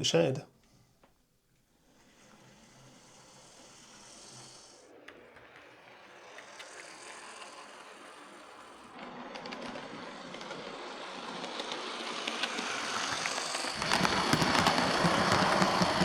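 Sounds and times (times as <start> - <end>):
model train motor hum: 1.8 - 16.0
light clicks from rails: 9.3 - 16.0.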